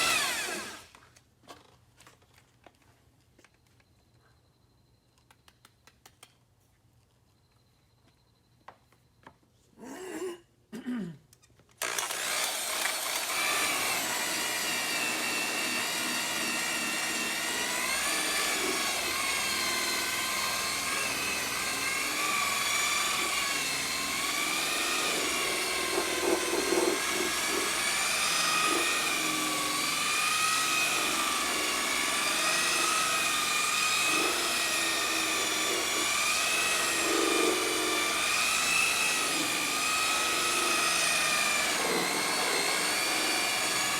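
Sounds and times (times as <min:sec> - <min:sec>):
electric buffer motor whine: 0:00.0 - 0:00.8, 0:11.8 - 0:43.9.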